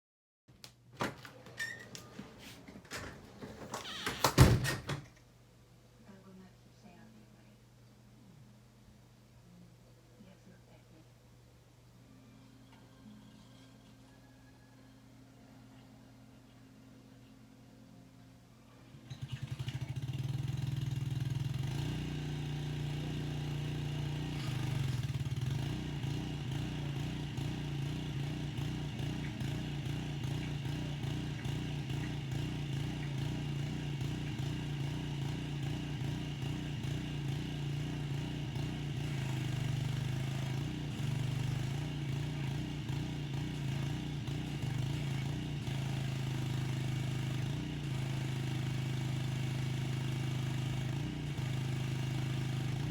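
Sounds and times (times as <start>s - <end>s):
pressure washer engine running: 19.1s - 52.9s.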